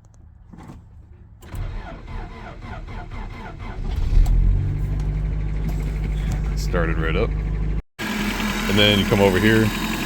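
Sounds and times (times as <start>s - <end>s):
engine cranking on starter: 1.4s - 6.3s
engine revving and idling: 2.1s - 10.0s.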